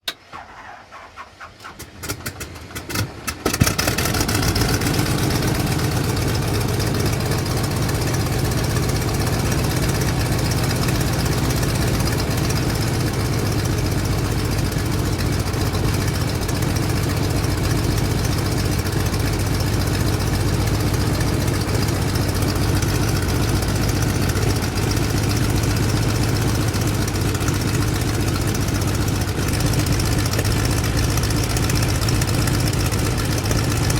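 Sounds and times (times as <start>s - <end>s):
propeller plane engine starting: 0.0s - 33.9s.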